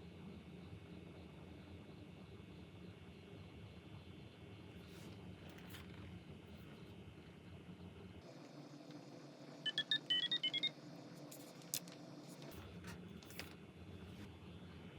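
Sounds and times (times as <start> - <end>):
short electronic beeps: 9.6 - 10.7.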